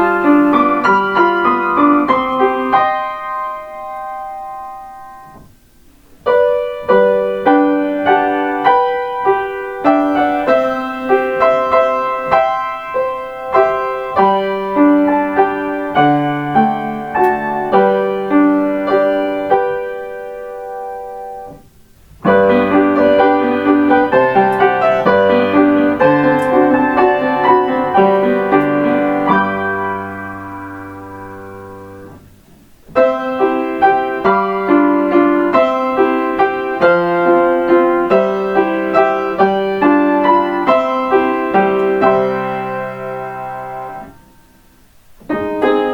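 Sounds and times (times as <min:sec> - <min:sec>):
piano playing chime melodies: 0:00.0 - 0:05.4.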